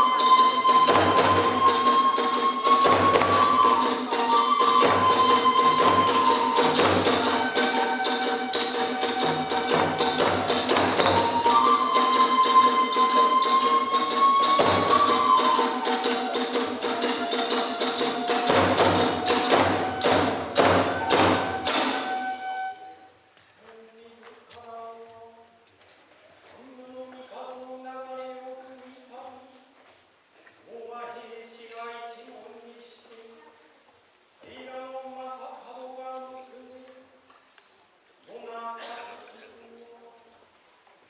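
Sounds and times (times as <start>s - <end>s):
fast drum beats: 0.0s - 22.5s
small hand cymbals clashing: 0.0s - 22.5s
bamboo flute melody: 0.0s - 23.3s
large drum thumps: 18.5s - 22.0s.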